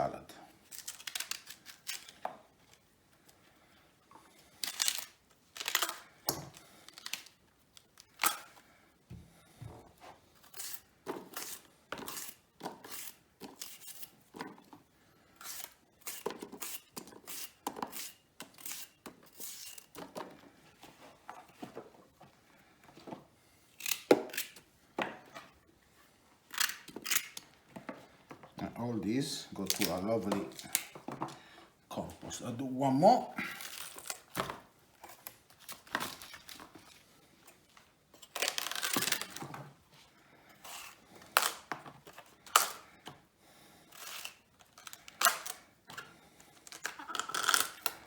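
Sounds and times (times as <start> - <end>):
fennel bulbs tearing and snapping: 0.7 - 2.2, 23.8 - 24.6.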